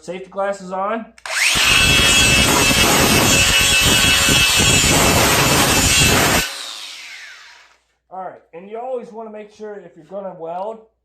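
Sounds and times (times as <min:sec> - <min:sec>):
angle grinder grinding metal: 0:01.2 - 0:07.8.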